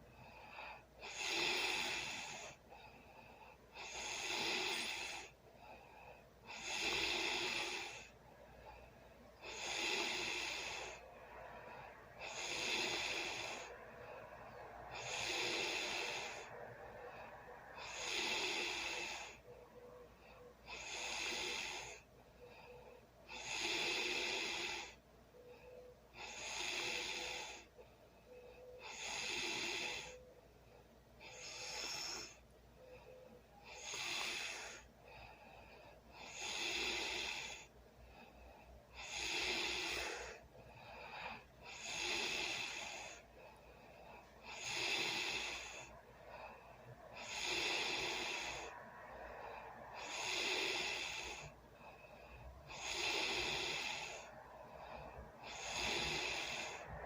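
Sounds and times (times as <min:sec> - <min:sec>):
faint breathing: 0:00.0 - 0:57.0
person snoring: 0:00.3 - 0:02.6, 0:03.7 - 0:05.4, 0:06.5 - 0:08.2, 0:09.4 - 0:19.5, 0:20.6 - 0:22.6, 0:23.3 - 0:25.0, 0:26.2 - 0:27.7, 0:28.8 - 0:30.2, 0:31.2 - 0:32.4, 0:33.6 - 0:34.9, 0:36.2 - 0:37.7, 0:38.9 - 0:43.3, 0:44.4 - 0:46.5, 0:47.1 - 0:52.1, 0:52.7 - 0:57.0.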